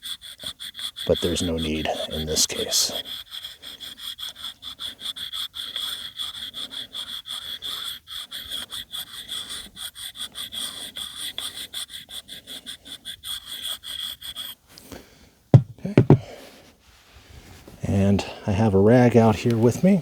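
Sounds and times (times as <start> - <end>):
sharpening puck scraping hatchet edge: 0.0 - 15.0.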